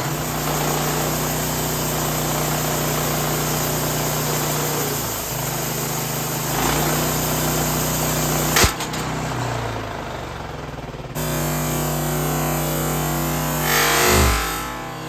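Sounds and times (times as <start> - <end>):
band saw cutting wood: 0.0 - 15.0
sawmill engine running: 0.0 - 15.0
saw blade snapping crack: 8.2 - 9.4.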